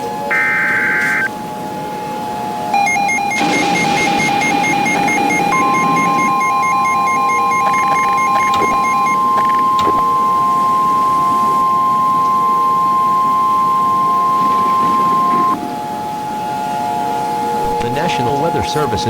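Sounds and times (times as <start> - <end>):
steady high alarm tone: 0.3 - 1.5, 2.2 - 19.0
rapid on-off beeping: 2.7 - 15.9.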